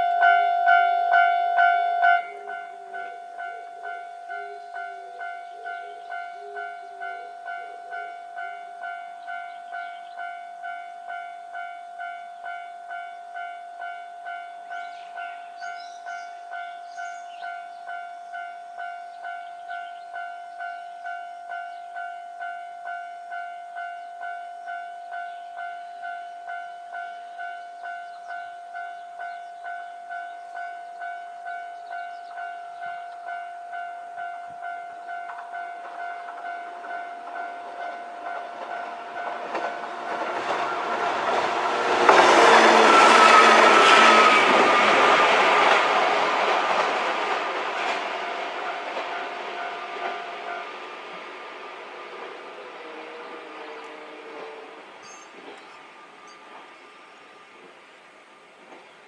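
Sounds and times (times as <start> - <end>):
level crossing warning bell: 0.0 - 54.0
approaching train running noise: 0.0 - 59.0.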